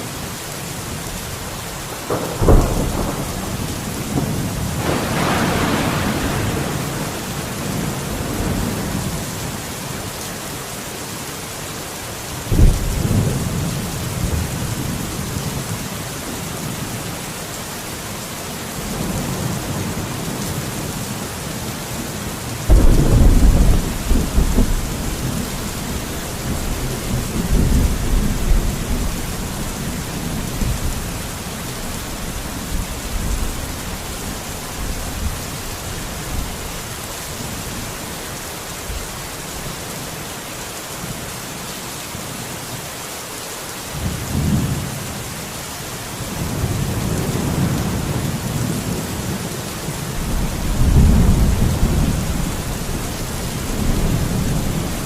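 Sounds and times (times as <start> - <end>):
heavy rain hissing: 0.0 - 55.0
thunder rumbling: 2.0 - 9.5, 22.7 - 36.7, 50.1 - 55.0
sharp thunderclaps: 2.1 - 8.8, 22.7 - 31.1, 50.2 - 52.6.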